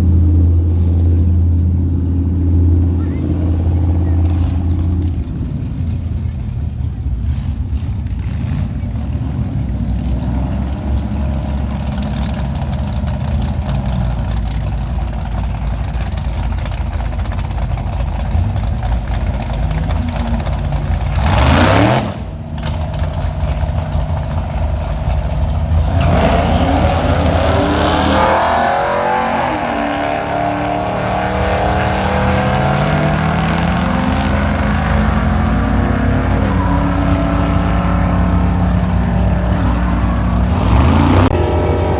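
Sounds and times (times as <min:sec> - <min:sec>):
vehicle passing close by: 0:00.0 - 0:06.5, 0:18.3 - 0:41.9
car engines running: 0:00.0 - 0:41.9.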